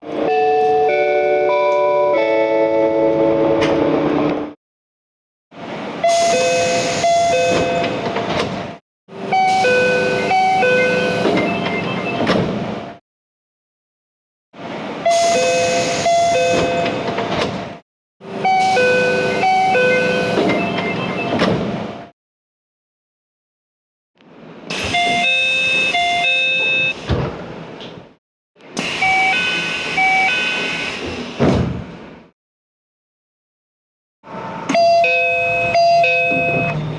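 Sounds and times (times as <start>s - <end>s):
two-note train door chime: 0.2s - 3.3s, 6.1s - 8.0s, 9.4s - 12.3s, 15.1s - 17.0s, 18.5s - 21.5s, 34.7s - 36.9s
railcar interior hum and rumble: 5.6s - 13.0s, 14.6s - 22.1s, 34.3s - 36.9s
train hum: 34.3s - 36.9s.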